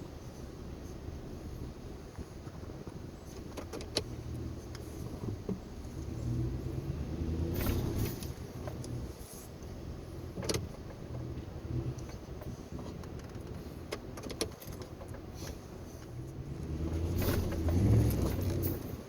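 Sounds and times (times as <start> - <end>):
truck engine revving: 5.8 - 9.2, 16.2 - 19.0.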